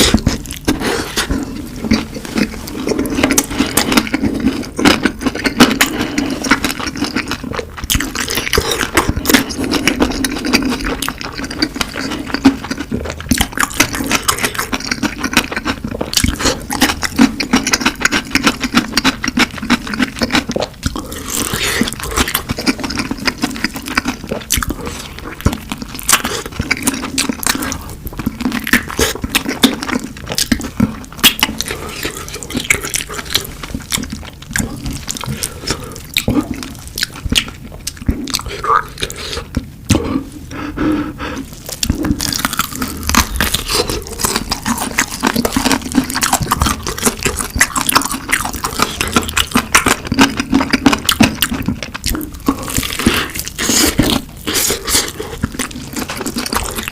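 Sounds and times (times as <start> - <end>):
wet chewing and biting: 0.0 - 40.2, 41.3 - 56.9
slurping: 0.0 - 56.9.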